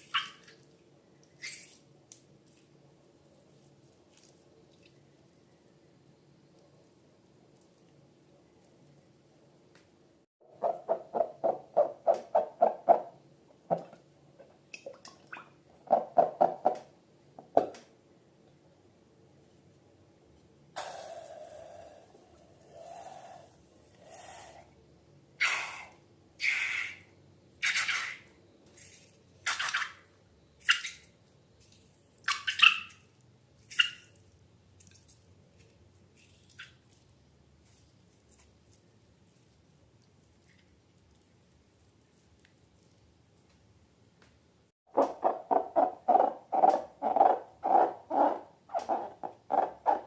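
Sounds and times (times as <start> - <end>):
slime squelching: 0.0 - 5.5, 33.6 - 43.5.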